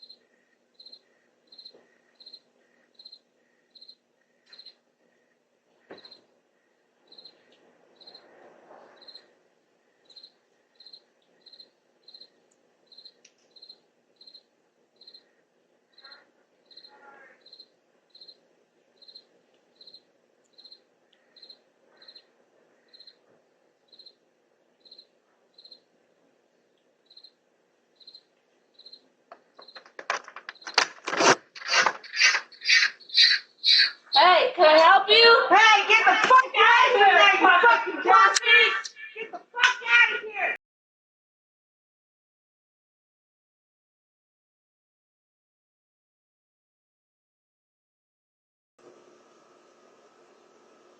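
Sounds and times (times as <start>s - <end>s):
crickets chirping: 0.0s - 8.3s, 8.9s - 24.2s, 24.8s - 25.9s, 27.0s - 30.8s.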